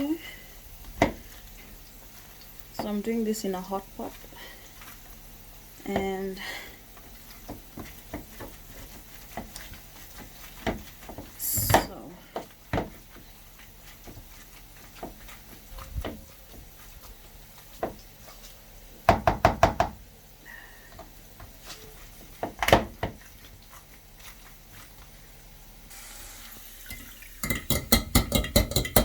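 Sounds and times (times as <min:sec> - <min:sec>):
masher knocking against pot: 0:27.4 - 0:29.0.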